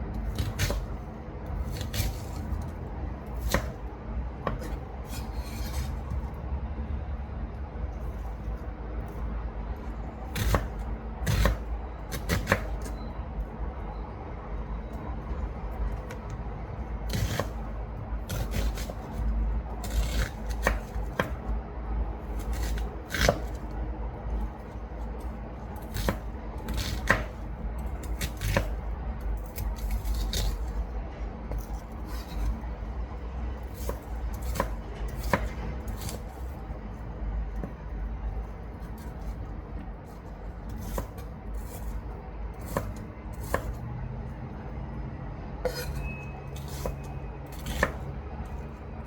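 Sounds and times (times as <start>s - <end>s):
knife cutting on a chopping board: 0.2s - 2.7s, 3.3s - 3.8s, 4.4s - 6.4s, 10.3s - 13.0s, 17.1s - 21.4s, 22.3s - 23.8s, 24.4s - 27.4s, 28.0s - 28.8s, 29.4s - 30.8s, 31.5s - 32.6s, 33.6s - 36.6s, 38.8s - 42.0s, 42.6s - 43.8s, 45.6s - 48.0s.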